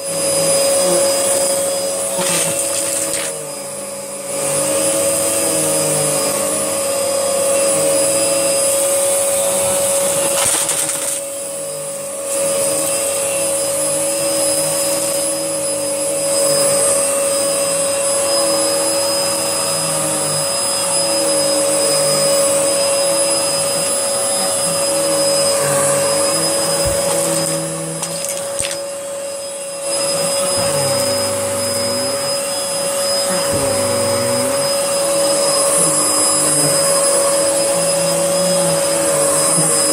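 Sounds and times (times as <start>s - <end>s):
upright vacuum cleaner whining: 0.0s - 39.9s.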